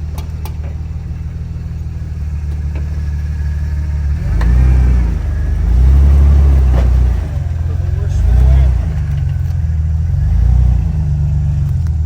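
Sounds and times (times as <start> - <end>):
car engine running under load: 0.0 - 12.0.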